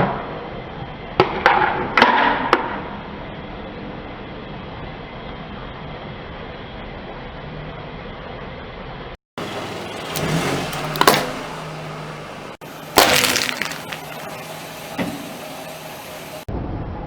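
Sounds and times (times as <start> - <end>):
tyre crushing brittle objects: 9.4 - 11.6, 12.6 - 14.6
car engine humming: 9.4 - 16.5.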